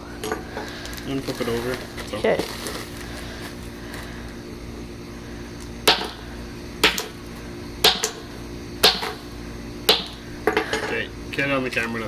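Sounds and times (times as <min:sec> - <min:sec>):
hammer blows on broken pieces: 0:05.8 - 0:07.2, 0:07.8 - 0:11.0.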